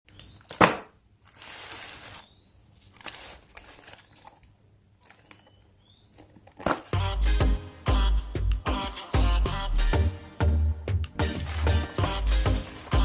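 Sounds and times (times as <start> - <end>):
crinkling rustle: 1.2 - 6.9, 11.4 - 13.0.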